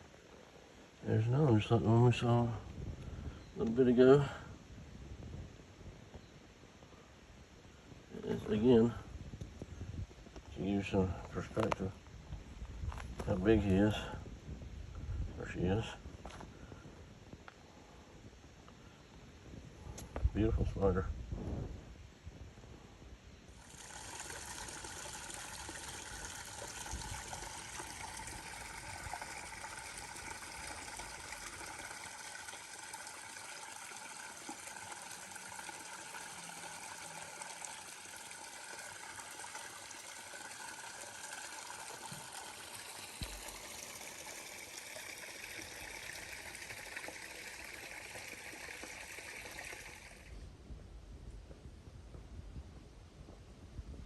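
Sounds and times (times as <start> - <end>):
water rushing in a stream: 23.5 - 50.4.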